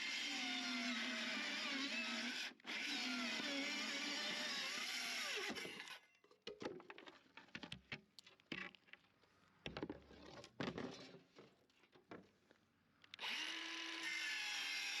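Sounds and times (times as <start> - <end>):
power drill motor winding down: 0.0 - 6.0, 13.2 - 15.0.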